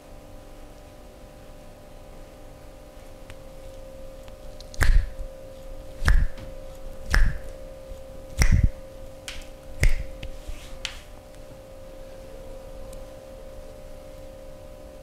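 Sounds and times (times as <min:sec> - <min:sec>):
hand strikes on body: 0:04.8 - 0:05.2, 0:06.0 - 0:06.5, 0:07.1 - 0:07.5, 0:08.4 - 0:08.8, 0:09.8 - 0:10.2.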